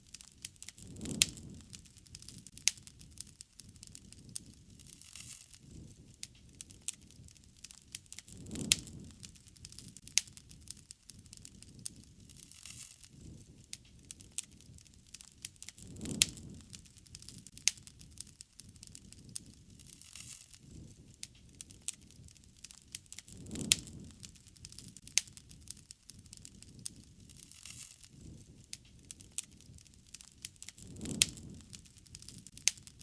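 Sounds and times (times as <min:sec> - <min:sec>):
low rumble of flames: 0:00.0 - 0:33.0
wood crackling and popping: 0:00.0 - 0:33.0.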